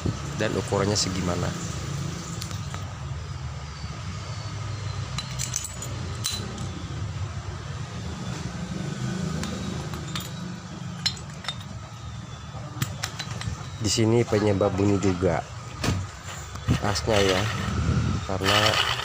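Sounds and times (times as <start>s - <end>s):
light metallic clinks: 4.9s - 6.8s, 9.4s - 12.2s, 12.8s - 14.0s.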